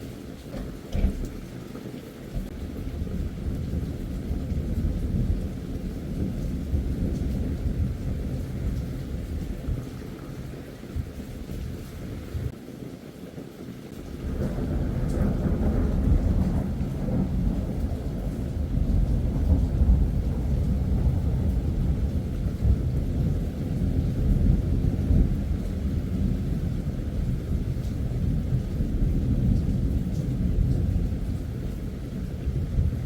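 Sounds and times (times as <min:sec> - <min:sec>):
thunder rolling and cracking: 0:00.2 - 0:01.7, 0:02.3 - 0:12.6, 0:14.0 - 0:33.0.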